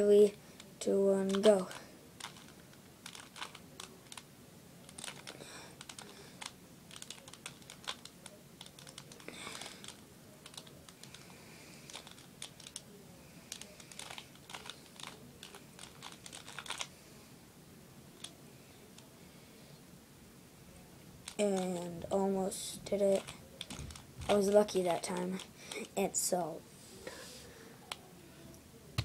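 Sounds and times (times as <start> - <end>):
puzzle cube plastic clicks: 0.6 - 11.2, 11.9 - 12.8, 13.5 - 16.9, 23.1 - 25.9.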